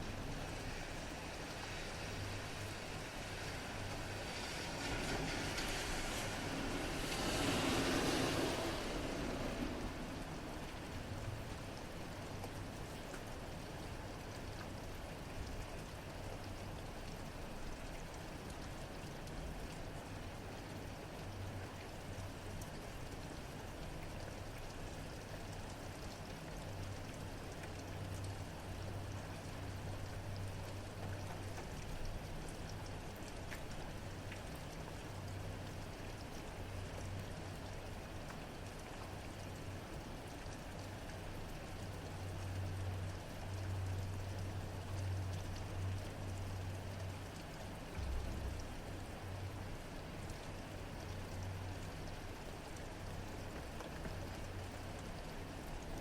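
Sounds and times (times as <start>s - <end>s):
steady rain: 0.0s - 56.0s
drops dripping on surfaces: 42.5s - 54.7s
low hum: 45.0s - 51.8s
low rumble: 47.9s - 50.8s.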